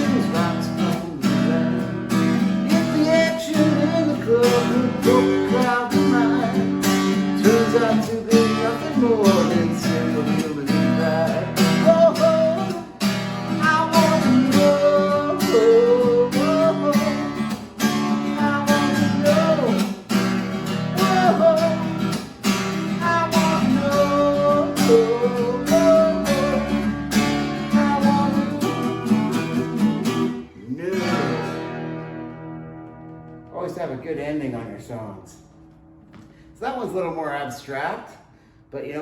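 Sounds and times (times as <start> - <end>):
person singing: 0.0 - 20.0, 20.8 - 31.6
acoustic guitar strumming: 0.0 - 37.2.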